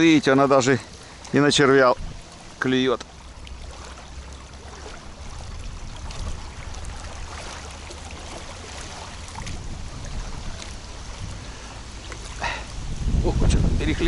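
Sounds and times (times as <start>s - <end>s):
small waves lapping: 0.0s - 14.0s
strong wind on microphone: 1.9s - 2.3s, 9.4s - 11.6s, 12.4s - 14.0s.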